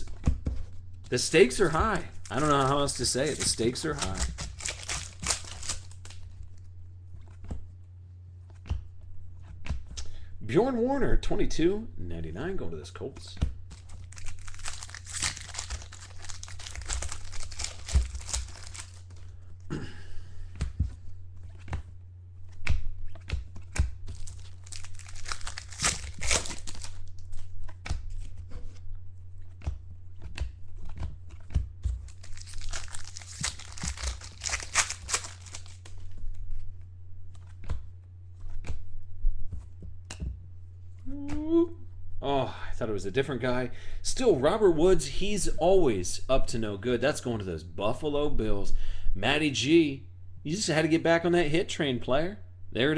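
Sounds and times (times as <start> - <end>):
card wrappers tearing and crinkling: 1.1 - 6.4, 13.7 - 19.3, 23.2 - 28.4, 30.3 - 36.2
cards clicking and tapping: 13.4 - 19.2, 29.5 - 36.0.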